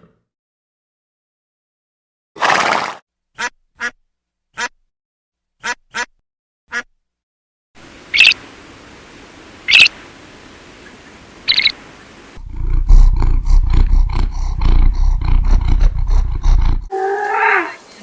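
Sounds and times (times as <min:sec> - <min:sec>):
short high animal calls: 0:08.1 - 0:08.4, 0:09.7 - 0:09.9, 0:11.5 - 0:11.7
deep rumbling animal growl: 0:12.4 - 0:16.9.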